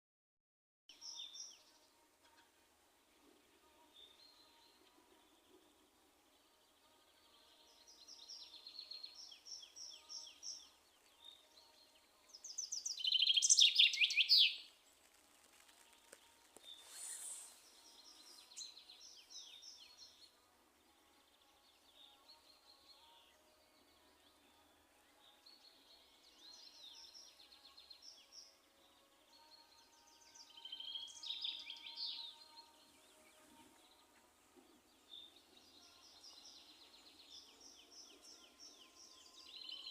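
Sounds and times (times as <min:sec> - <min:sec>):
songbirds singing: 0:00.9 - 0:39.9.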